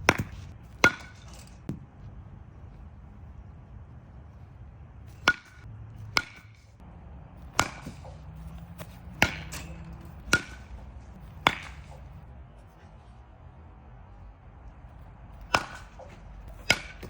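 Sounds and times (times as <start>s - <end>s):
bat cracking against ball: 0.0s - 1.8s, 5.1s - 6.6s, 7.4s - 12.3s, 15.4s - 17.0s.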